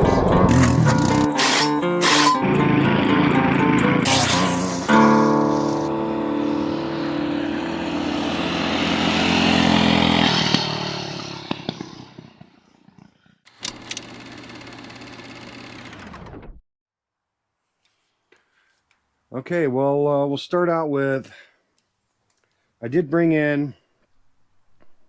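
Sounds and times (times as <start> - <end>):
engine running: 0.0 - 12.5, 13.7 - 16.6.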